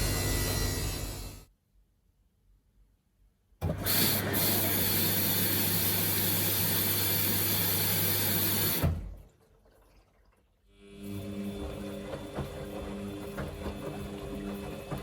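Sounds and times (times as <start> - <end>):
electrical hum: 0.0 - 1.4
water hissing into washing machine: 3.6 - 15.0.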